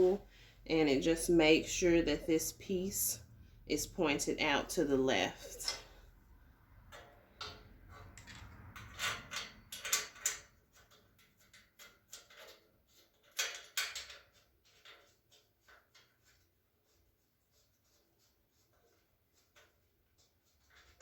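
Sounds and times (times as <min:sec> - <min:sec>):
metal shelving parts clicking: 0:05.4 - 0:06.0, 0:06.8 - 0:16.2.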